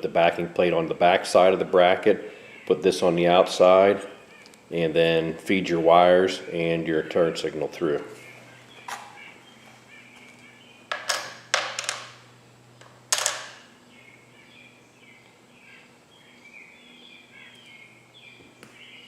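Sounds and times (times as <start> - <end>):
faint birds chirping: 0.0 - 11.1, 12.2 - 19.0
small parts clicking and clattering: 10.9 - 12.2.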